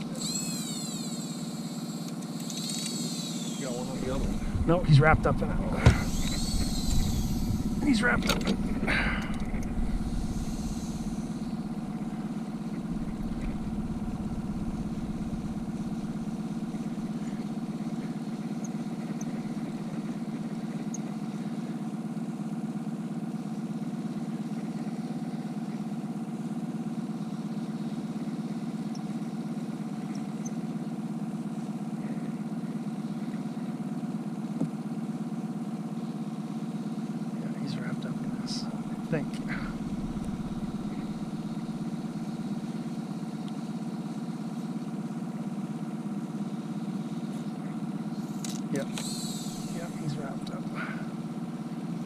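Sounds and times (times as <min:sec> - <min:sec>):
outboard motor running: 0:00.0 - 0:52.0.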